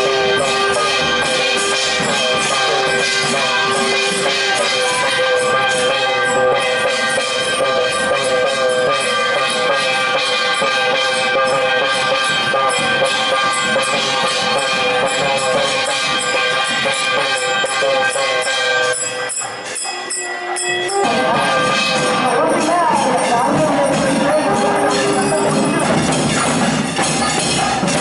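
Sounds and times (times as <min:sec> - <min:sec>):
jingling percussion: 0:00.0 - 0:28.0
sustained held tones: 0:18.6 - 0:26.2.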